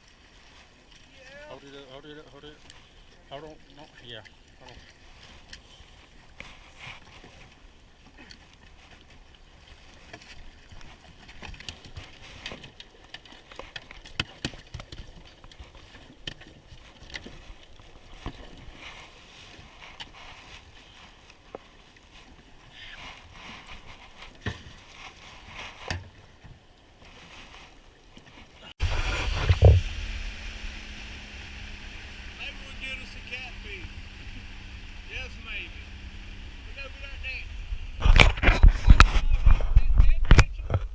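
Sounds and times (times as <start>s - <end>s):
faint steady hiss: 19.0s - 39.4s.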